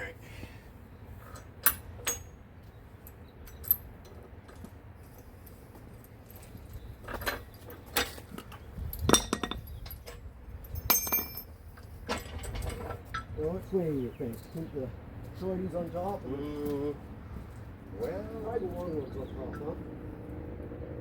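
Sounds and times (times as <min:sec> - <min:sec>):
metal tools clinking: 0:05.1 - 0:13.4.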